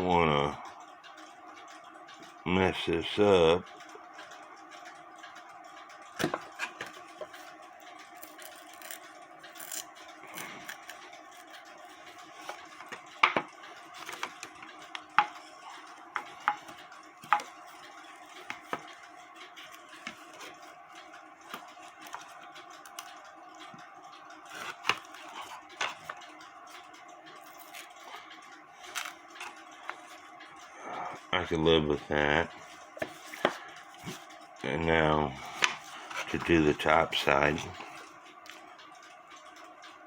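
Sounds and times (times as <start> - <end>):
faint steady hum: 0.0 - 40.0
cutting tool clicking and scraping paper: 8.2 - 11.5, 24.5 - 26.2.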